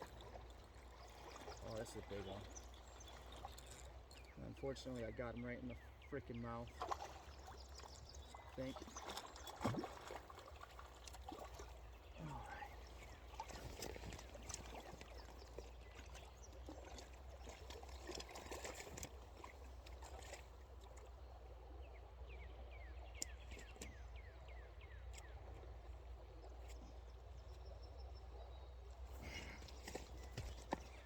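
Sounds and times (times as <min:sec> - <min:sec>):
river water flowing: 0:00.0 - 0:22.2.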